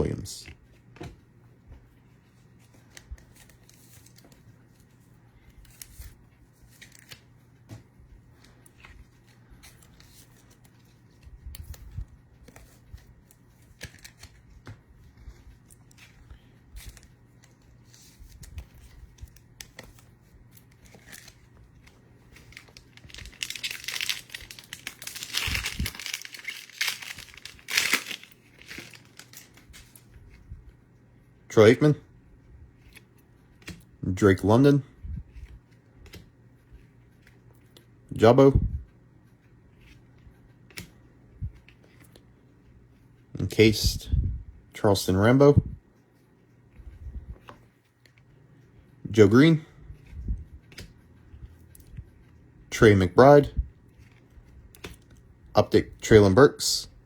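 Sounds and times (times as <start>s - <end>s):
wrapper tearing and crinkling: 22.4s - 29.9s.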